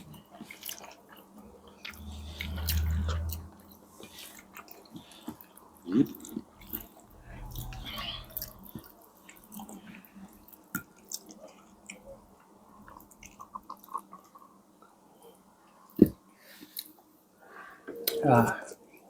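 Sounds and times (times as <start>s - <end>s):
close-up chewing of food: 0.0s - 15.0s.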